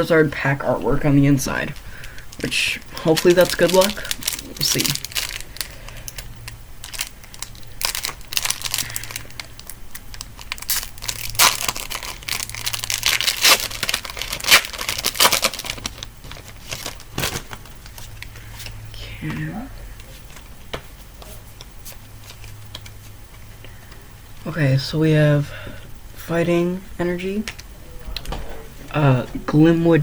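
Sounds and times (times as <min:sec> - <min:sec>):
foil wrapper crinkling and tearing: 0:02.0 - 0:18.3.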